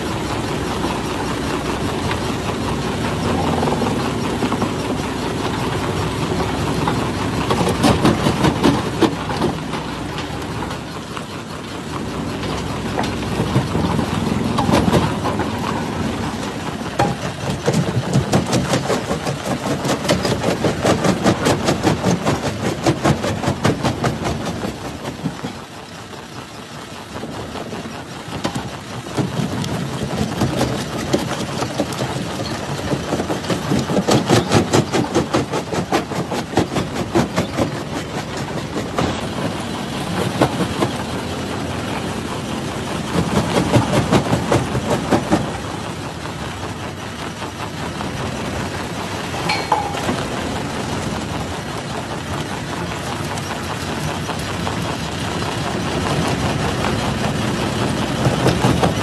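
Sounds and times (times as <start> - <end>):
jaw crusher crushing rock: 6.9 - 10.4, 28.5 - 39.4.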